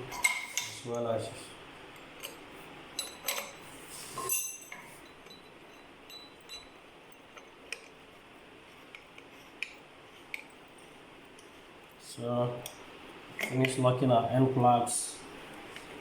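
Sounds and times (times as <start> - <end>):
small hard fittings clinking: 0.0 - 0.8, 1.9 - 8.0, 12.6 - 13.8.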